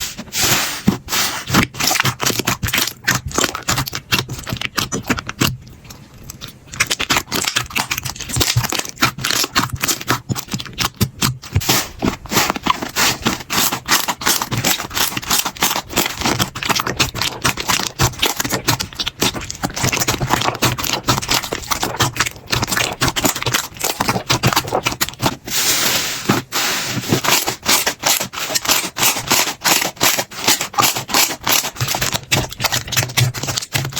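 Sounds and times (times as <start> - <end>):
slime squeezed by hand: 6.3 - 33.9.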